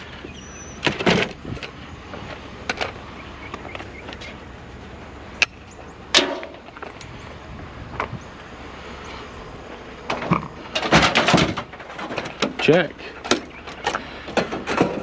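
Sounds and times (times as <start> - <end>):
loud clatter: 10.1 - 12.6
scrap items knocking and clanking: 10.1 - 15.0.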